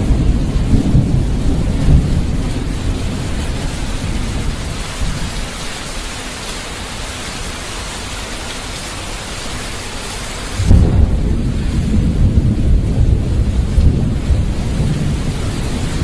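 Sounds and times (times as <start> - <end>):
thunder rumble: 0.0 - 5.8, 10.6 - 16.0
rain hiss: 0.0 - 16.0.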